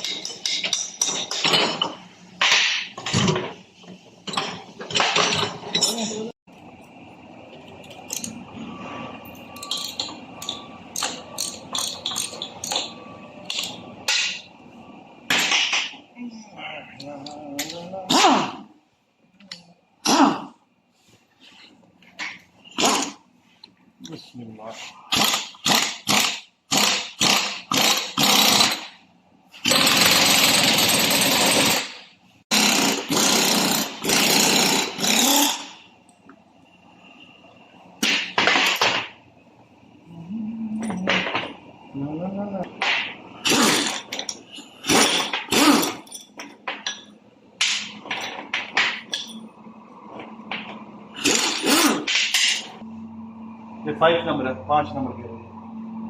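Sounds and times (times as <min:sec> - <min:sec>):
pneumatic impact wrench bursts: 0:22.7 - 0:23.2, 0:25.1 - 0:29.0, 0:29.6 - 0:35.8, 0:43.4 - 0:46.1, 0:51.1 - 0:52.6.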